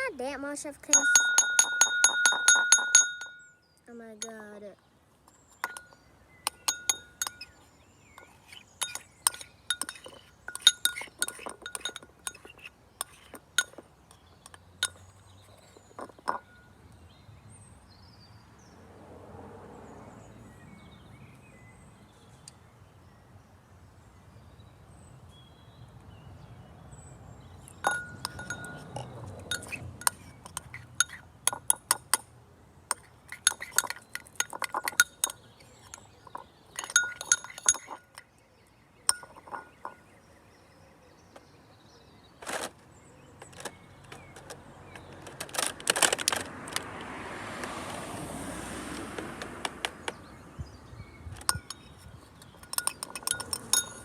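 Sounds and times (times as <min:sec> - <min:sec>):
objects clinking in container: 0:08.2 - 0:16.6, 0:27.7 - 0:32.2, 0:32.9 - 0:38.2, 0:39.1 - 0:40.0, 0:51.4 - 0:54.0.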